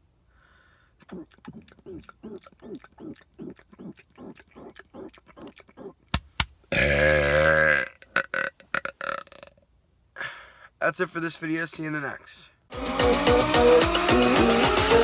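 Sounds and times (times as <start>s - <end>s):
short throaty sounds: 1.0s - 6.0s
man burping loudly: 6.7s - 9.6s.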